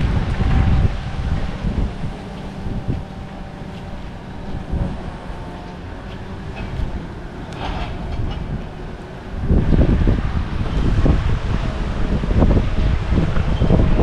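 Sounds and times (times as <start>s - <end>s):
faint steady hum: 0.0s - 14.0s
wind buffeting microphone: 0.0s - 14.0s.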